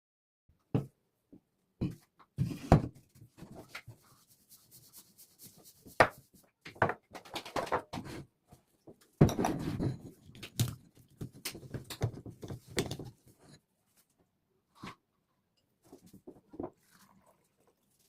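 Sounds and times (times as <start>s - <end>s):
hard objects knocking and clattering: 6.7s - 8.2s, 8.9s - 13.6s.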